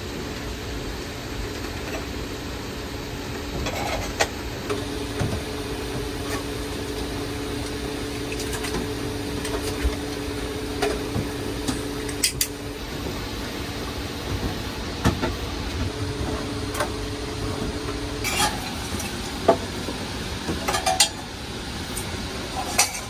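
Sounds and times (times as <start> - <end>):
heavy rain on a vehicle roof: 0.0 - 22.6
low steady hum: 4.6 - 23.0.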